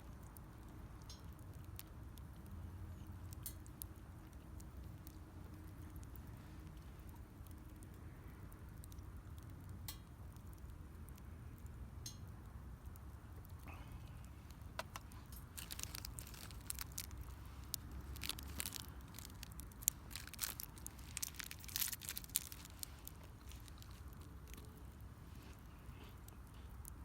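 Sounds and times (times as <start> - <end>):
burning firewood crackling: 0.0 - 27.0.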